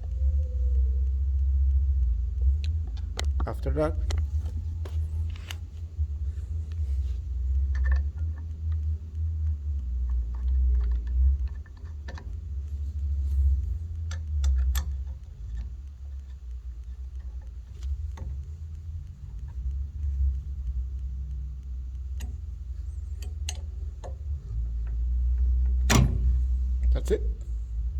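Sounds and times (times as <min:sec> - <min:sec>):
steady low rumble: 0:00.0 - 0:27.9
metallic clicks and taps: 0:13.9 - 0:27.2.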